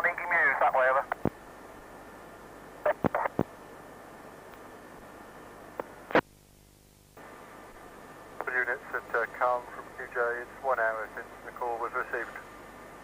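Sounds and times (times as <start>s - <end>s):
radio scanner hiss: 0.0s - 1.4s, 2.7s - 3.8s, 4.5s - 12.8s
radio clicks: 1.0s - 1.4s, 2.8s - 3.6s, 5.8s - 6.3s.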